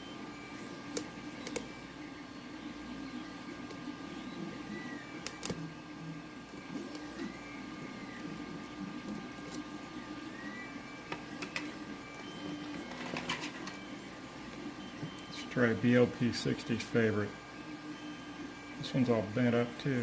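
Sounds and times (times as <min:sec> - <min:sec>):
printer motor whine: 0:00.0 - 0:20.0.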